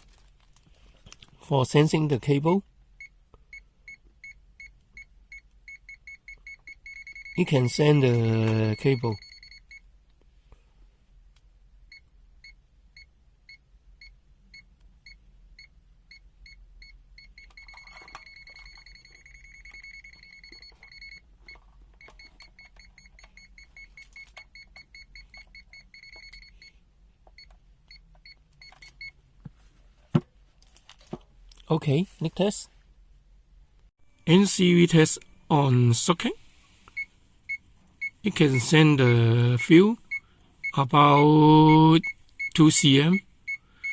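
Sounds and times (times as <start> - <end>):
multimeter buzzer beeping: 5.3 - 9.8, 38.0 - 43.9.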